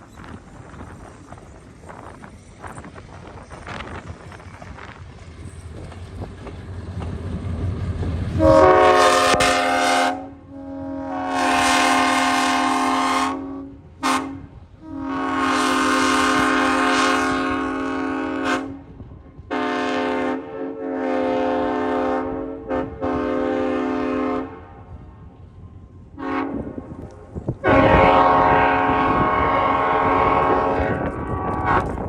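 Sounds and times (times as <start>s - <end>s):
low rumble of train: 0.0s - 32.0s
locomotive air horn blasts: 8.4s - 24.8s, 26.2s - 26.9s, 27.6s - 32.0s.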